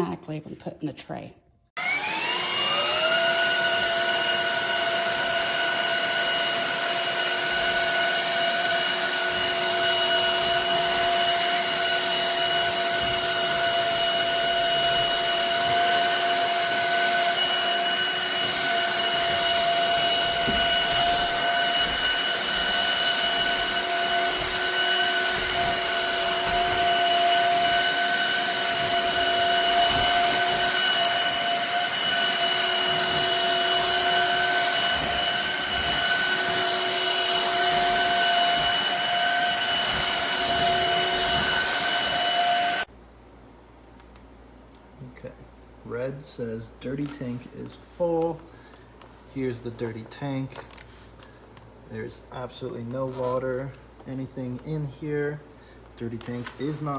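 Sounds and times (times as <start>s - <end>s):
vacuum motor whining: 1.8s - 42.9s, 55.8s - 56.9s.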